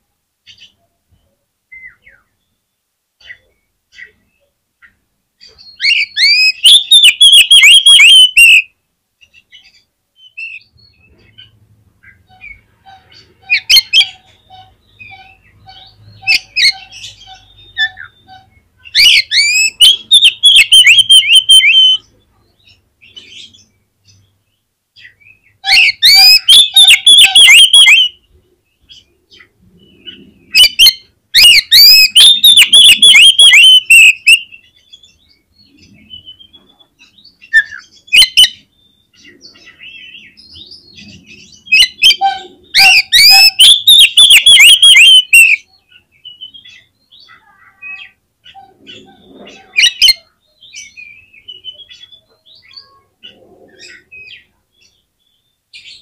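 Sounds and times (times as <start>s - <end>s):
bird singing whistled notes: 0.6s - 4.2s, 5.5s - 8.7s, 9.3s - 22.1s, 25.0s - 29.1s, 29.8s - 47.3s.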